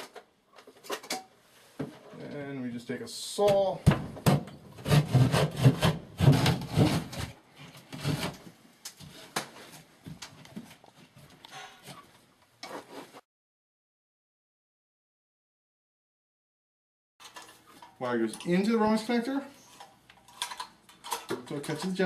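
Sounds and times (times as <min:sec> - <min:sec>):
scrapes and knocks: 0:03.9 - 0:13.2
hand saw cutting drywall: 0:04.8 - 0:08.4.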